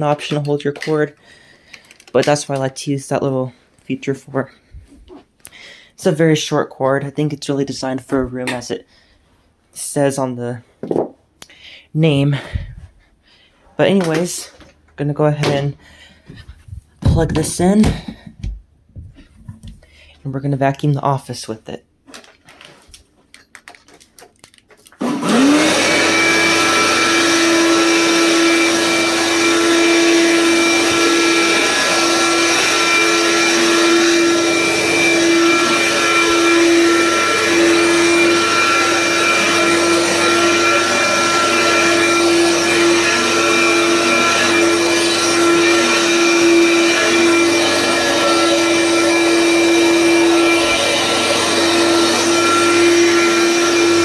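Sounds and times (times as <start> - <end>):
vacuum cleaner motor humming: 25.0 - 54.0.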